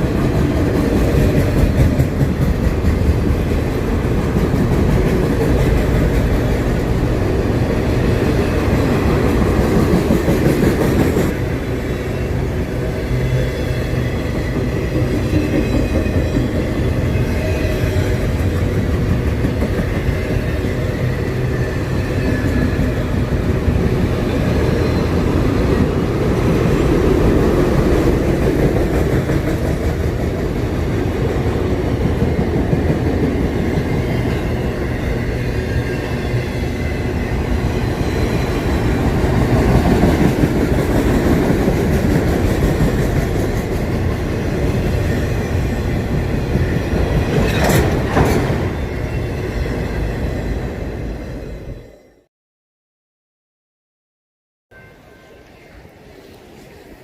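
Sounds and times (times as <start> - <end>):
sharp clacks of train wheels: 0.0 - 7.0, 8.5 - 11.4, 14.3 - 17.1, 18.0 - 20.5, 25.8 - 34.6, 37.9 - 48.8
train wheels rumbling on track: 0.0 - 51.8.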